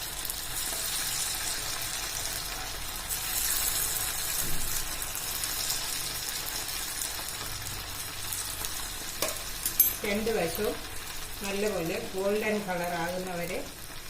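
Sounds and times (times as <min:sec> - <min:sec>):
hot oil sizzling: 0:00.0 - 0:14.0.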